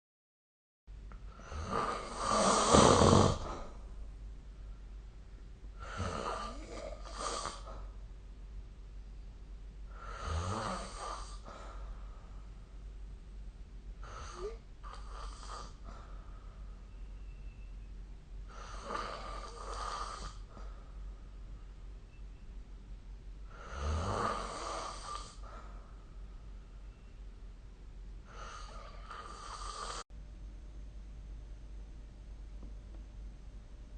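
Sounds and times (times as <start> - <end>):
person snoring: 1.3 - 3.8, 5.8 - 7.8, 9.9 - 11.8, 14.0 - 16.0, 18.5 - 20.7, 23.5 - 25.5, 28.2 - 30.0.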